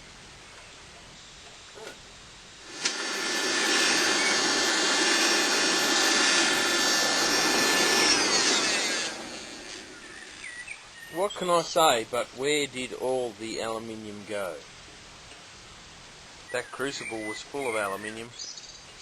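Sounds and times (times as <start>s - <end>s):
electric air blower whining: 1.8s - 10.8s.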